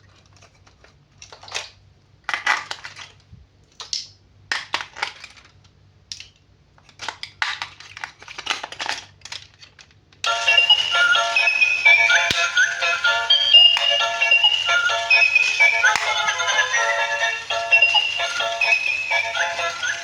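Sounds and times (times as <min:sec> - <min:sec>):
packaging crinkling: 0:06.8 - 0:10.0
music with synthesized singing: 0:10.3 - 0:20.0.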